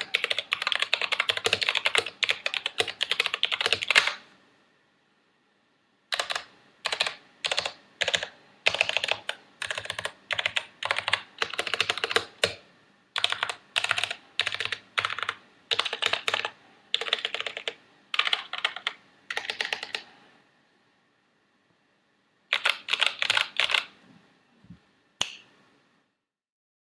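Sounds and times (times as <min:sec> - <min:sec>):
mechanical keyboard typing: 0:00.0 - 0:04.2, 0:06.1 - 0:12.6, 0:13.2 - 0:20.1, 0:22.5 - 0:23.9.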